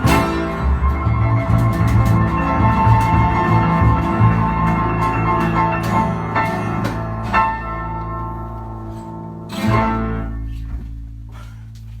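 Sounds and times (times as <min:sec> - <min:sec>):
live band playing chords: 0:00.0 - 0:08.6.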